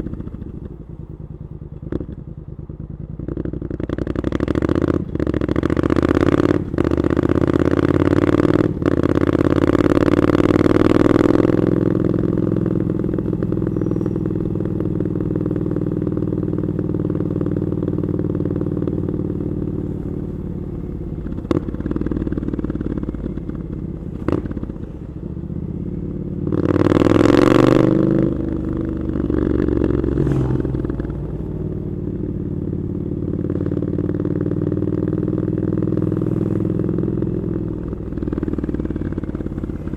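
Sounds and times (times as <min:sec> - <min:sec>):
motorcycle engine pulling hard: 0:26.3 - 0:39.9.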